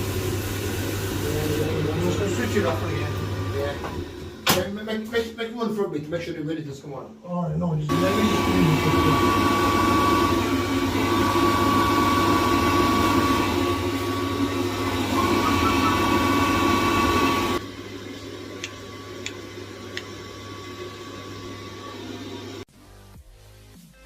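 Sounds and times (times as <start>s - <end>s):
boiler fan rushing and whining: 7.9s - 22.6s.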